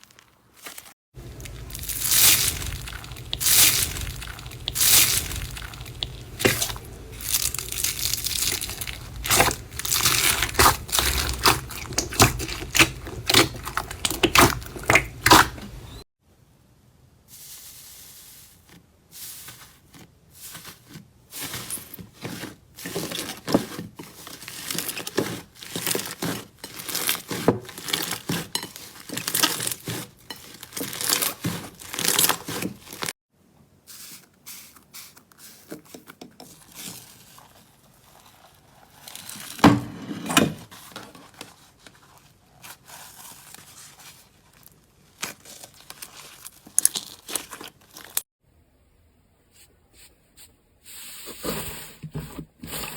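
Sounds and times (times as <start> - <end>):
slime crackling and popping: 0.0 - 16.0, 45.2 - 48.2.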